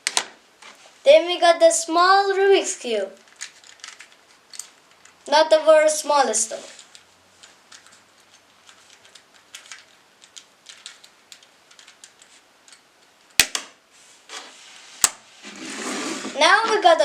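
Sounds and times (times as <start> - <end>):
plastic cube clicking: 7.7 - 12.8.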